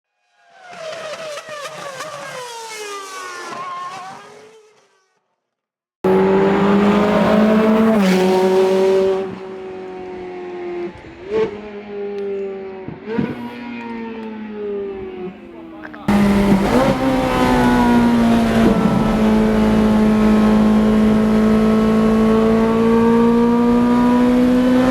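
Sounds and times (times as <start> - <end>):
sports car engine: 6.0 - 24.9
engine rev blip: 12.1 - 24.9.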